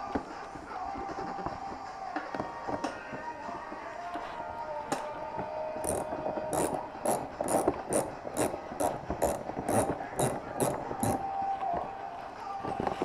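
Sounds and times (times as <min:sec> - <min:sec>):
ratchet wrench clicking: 0:05.8 - 0:11.2.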